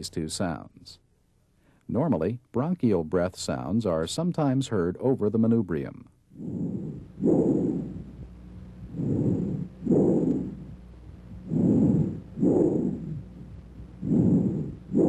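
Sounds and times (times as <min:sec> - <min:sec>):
breath sounds through stethoscope: 0:06.4 - 0:15.0.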